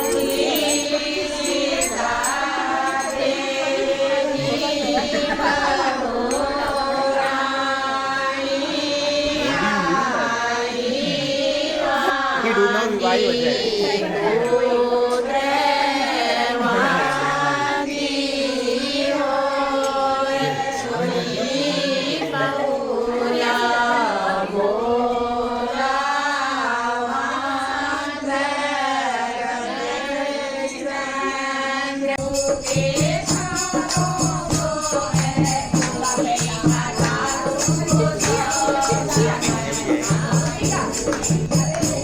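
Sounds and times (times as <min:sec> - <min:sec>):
rhythmic beat with tambourine jingling: 0:00.0 - 0:07.6, 0:32.2 - 0:42.0
person singing ornamented melody: 0:00.0 - 0:22.8.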